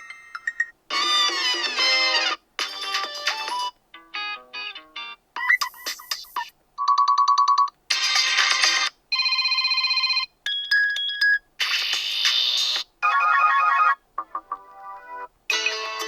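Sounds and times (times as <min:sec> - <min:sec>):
phone ringtone melodies: 0:00.0 - 0:03.7, 0:09.1 - 0:11.4, 0:13.0 - 0:16.0.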